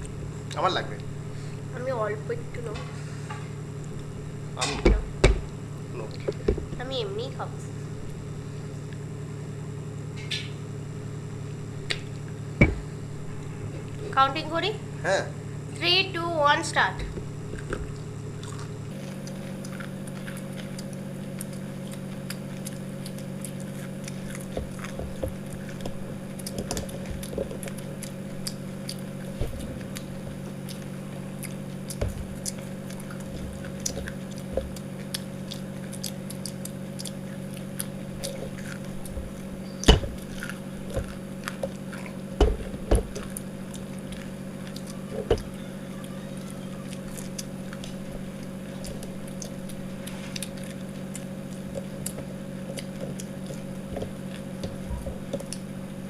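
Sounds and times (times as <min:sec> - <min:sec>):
chewing and crunching: 0:00.0 - 0:56.0
low hum: 0:00.0 - 0:56.0
knocks: 0:04.6 - 0:05.5, 0:12.6 - 0:12.9.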